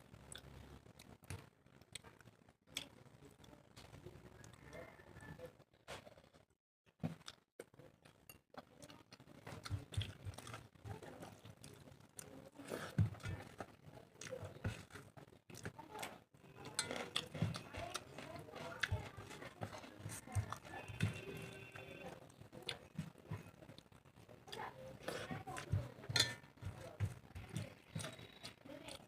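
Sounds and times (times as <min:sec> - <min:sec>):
person chewing and lip smacking: 0:07.1 - 0:10.7.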